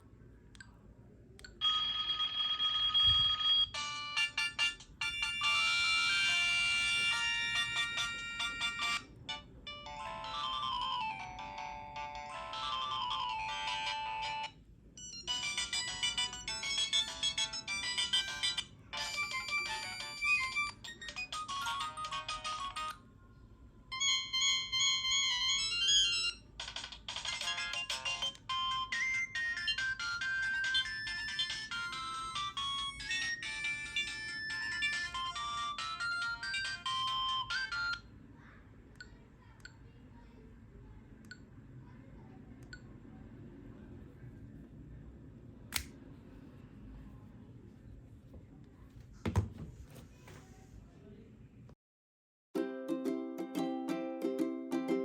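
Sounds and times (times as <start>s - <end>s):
phone ringtone melodies: 1.6s - 23.0s, 23.9s - 38.1s.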